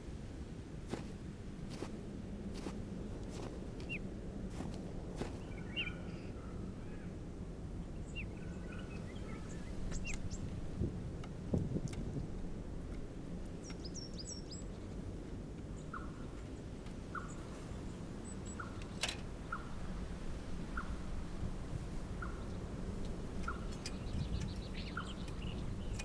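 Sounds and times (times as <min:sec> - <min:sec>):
low background rush: 0:00.0 - 0:26.0
high falling bird chirps: 0:02.6 - 0:06.4.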